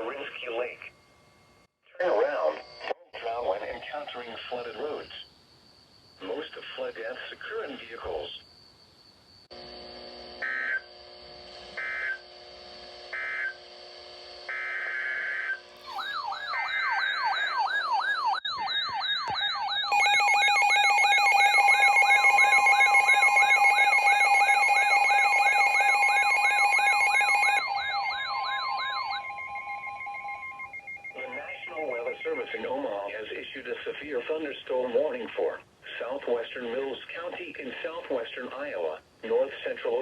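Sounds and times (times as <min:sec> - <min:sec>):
rising electronic siren sweep: 0:14.5 - 0:32.9
data burst tones: 0:14.6 - 0:34.7
steady two-tone attention signal: 0:19.4 - 0:33.5.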